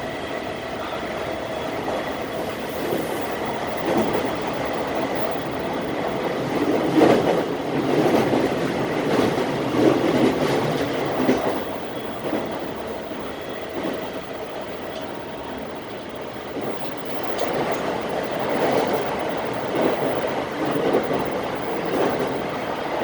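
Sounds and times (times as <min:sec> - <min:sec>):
train wheels rumbling on rails: 0:00.0 - 0:23.0.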